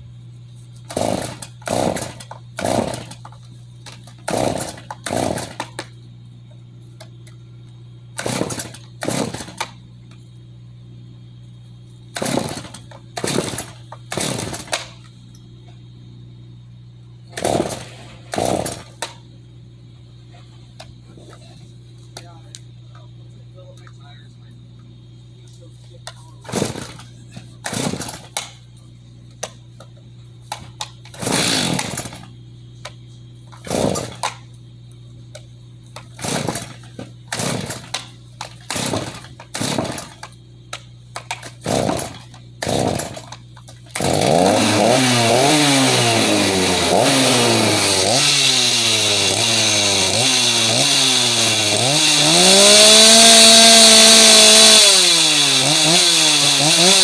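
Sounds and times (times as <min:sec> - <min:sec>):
chainsaw starter rope pulls: 0:00.8 - 0:05.8, 0:08.2 - 0:09.7, 0:12.2 - 0:14.9, 0:17.3 - 0:19.1, 0:26.4 - 0:28.5, 0:30.5 - 0:32.3, 0:33.5 - 0:34.4, 0:36.0 - 0:40.4, 0:41.2 - 0:57.0
chainsaw engine revving: 0:00.9 - 0:03.3, 0:04.2 - 0:05.8, 0:08.2 - 0:09.7, 0:12.2 - 0:14.9, 0:17.3 - 0:19.2, 0:26.5 - 0:28.5, 0:30.5 - 0:32.3, 0:33.6 - 0:34.4, 0:36.0 - 0:40.3, 0:41.3 - 0:57.0.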